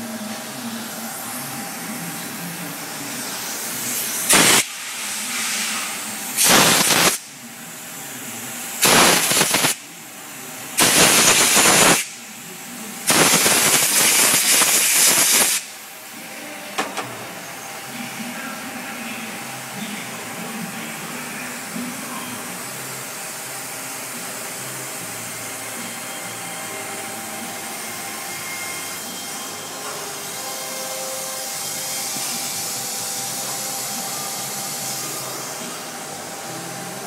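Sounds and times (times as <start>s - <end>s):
loud hissing bursts: 3.4s - 7.3s, 8.8s - 9.8s, 10.8s - 12.2s, 13.0s - 15.7s
faint machine hum: 15.6s - 37.0s.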